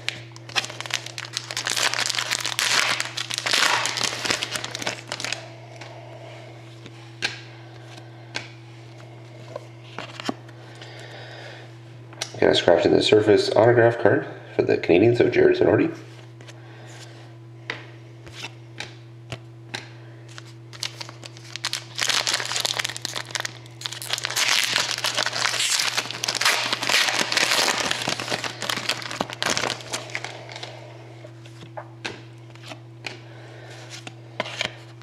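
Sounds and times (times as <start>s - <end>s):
wrapper tearing and crinkling: 0.0s - 5.4s, 20.4s - 30.7s
steady low hum: 0.0s - 35.0s.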